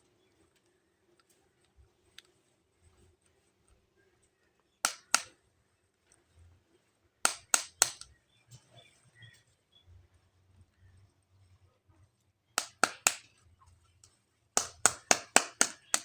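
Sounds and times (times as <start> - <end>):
toys clicking: 14.6 - 16.0.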